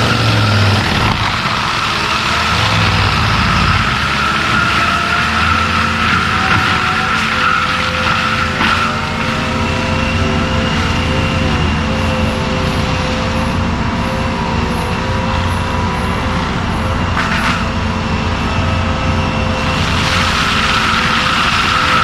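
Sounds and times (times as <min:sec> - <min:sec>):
track loader running: 0:00.0 - 0:22.0.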